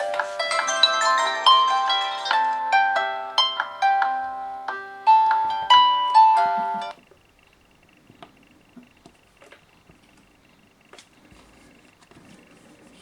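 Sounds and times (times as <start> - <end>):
phone alert tone melody: 0.0 - 4.2, 5.1 - 7.0.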